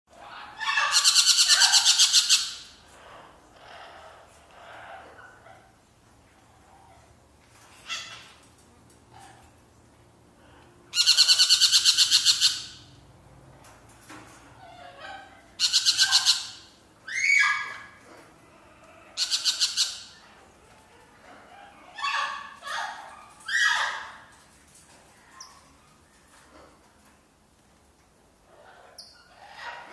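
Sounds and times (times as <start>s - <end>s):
parrots squawking: 0.1s - 5.6s, 10.4s - 13.0s, 14.6s - 24.4s, 28.5s - 29.9s.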